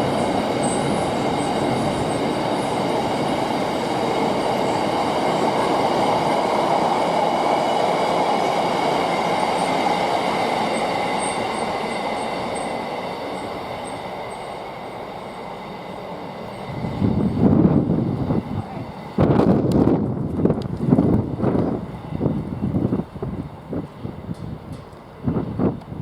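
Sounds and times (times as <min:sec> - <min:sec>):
wind buffeting microphone: 0:00.0 - 0:10.4, 0:16.6 - 0:26.0
train wheels rumbling on rail: 0:00.0 - 0:26.0.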